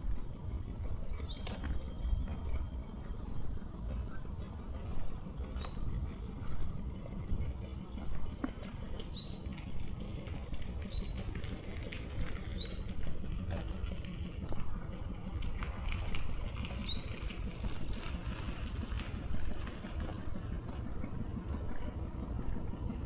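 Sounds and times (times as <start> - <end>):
songbird calling: 0.0 - 2.2, 2.8 - 6.8, 7.8 - 10.0, 10.8 - 11.5, 12.5 - 13.5, 16.8 - 18.0, 19.0 - 19.8
low rumble: 0.0 - 23.0.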